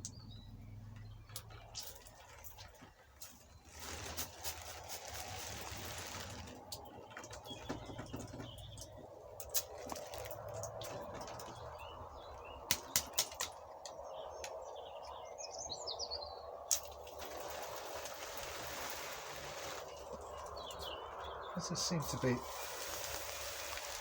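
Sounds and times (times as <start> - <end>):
birds chirping: 0.0 - 24.0
water spraying from washer jet: 16.7 - 20.2, 21.8 - 24.0.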